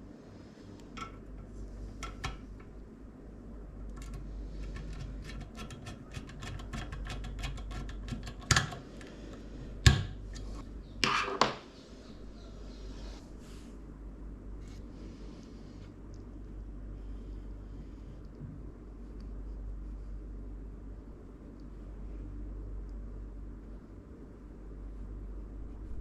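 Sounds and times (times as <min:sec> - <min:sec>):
small hard parts clicking: 0:03.9 - 0:09.1.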